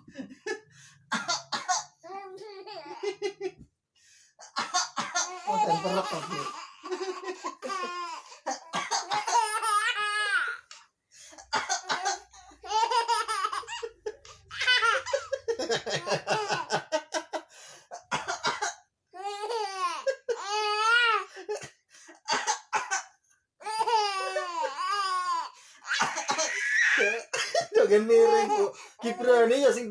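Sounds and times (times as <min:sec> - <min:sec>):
baby laughing and giggling: 0:02.1 - 0:03.5, 0:05.3 - 0:10.7, 0:11.9 - 0:17.0, 0:19.2 - 0:21.2, 0:23.6 - 0:29.2
man coughing: 0:04.4 - 0:09.6, 0:11.6 - 0:12.4, 0:18.0 - 0:18.8, 0:25.9 - 0:28.7.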